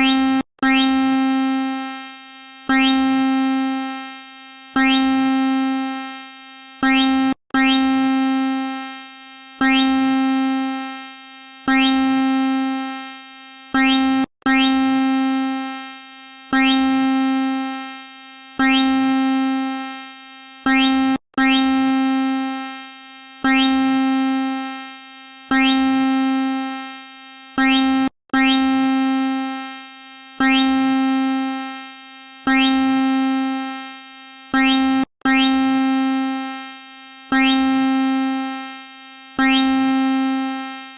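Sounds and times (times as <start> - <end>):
buzzy emergency alarm tone: 0.0 - 1.9, 2.7 - 4.0, 4.8 - 6.1, 6.8 - 8.8, 9.6 - 10.8, 11.7 - 13.0, 13.8 - 15.7, 16.5 - 17.8, 18.6 - 20.0, 20.7 - 22.7, 23.4 - 24.8, 25.5 - 26.8, 27.6 - 29.6, 30.4 - 31.6, 32.5 - 33.7, 34.5 - 36.5, 37.3 - 38.6, 39.4 - 40.8.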